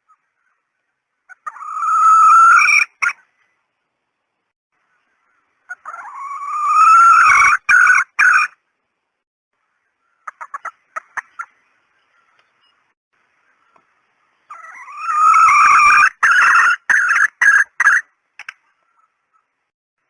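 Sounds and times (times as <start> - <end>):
hen clucking: 1.3 - 3.2, 5.7 - 8.6, 10.2 - 11.6, 14.5 - 19.5
hen long drawn-out call: 1.3 - 3.6, 5.0 - 8.6, 14.5 - 19.5.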